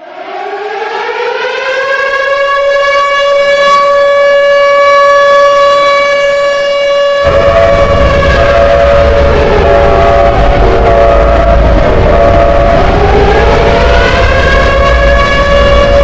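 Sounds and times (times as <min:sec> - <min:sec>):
siren winding up to a wail: 0:00.0 - 0:16.0
deep rumble: 0:07.2 - 0:16.0.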